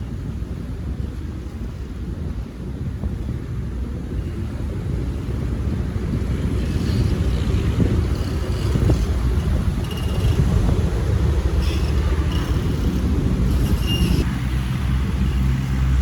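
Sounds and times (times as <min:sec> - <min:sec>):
road traffic rumble: 0:00.0 - 0:16.0.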